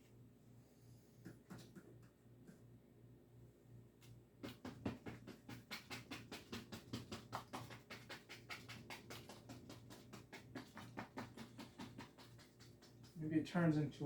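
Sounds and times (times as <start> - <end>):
paintbrush tapping on canvas: 4.4 - 13.2.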